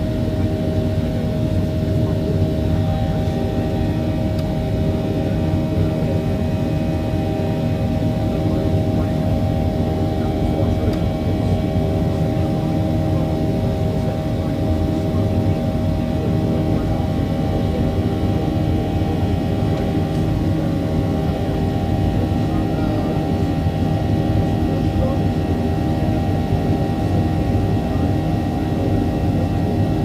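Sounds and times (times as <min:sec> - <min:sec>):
jet engine hum in cabin: 0:00.0 - 0:30.0.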